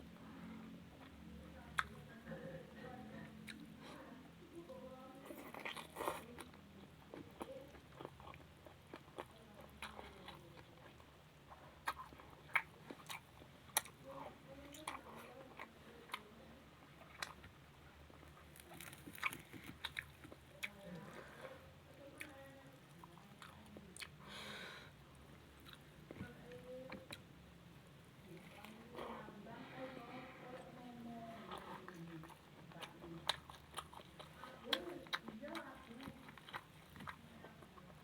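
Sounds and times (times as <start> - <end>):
person chewing crunchy food: 5.3 - 14.0, 17.0 - 21.4, 31.3 - 38.0.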